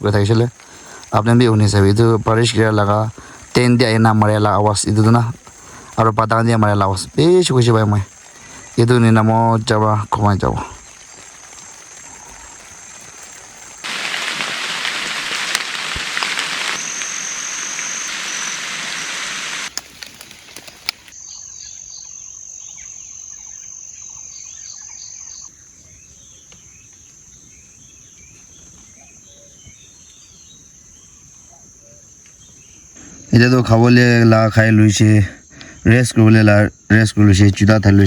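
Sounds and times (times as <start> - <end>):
heavy rain falling: 0.0 - 21.1
insect trill: 0.0 - 38.0
bird chirps: 15.2 - 33.3.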